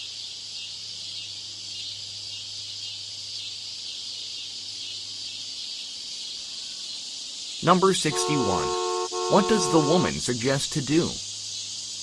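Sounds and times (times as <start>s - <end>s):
high-pitched hiss: 4.1s - 12.0s.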